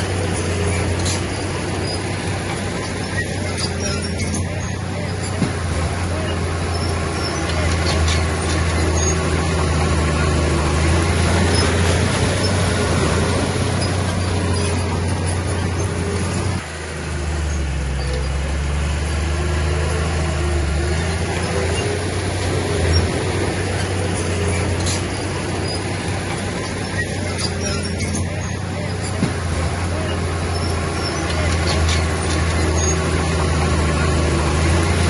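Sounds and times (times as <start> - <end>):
heavy diesel engine droning: 0.0 - 35.0.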